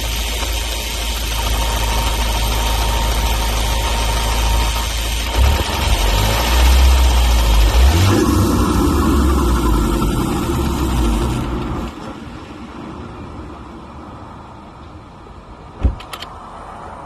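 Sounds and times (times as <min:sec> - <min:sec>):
car engine idling: 0:00.0 - 0:12.6.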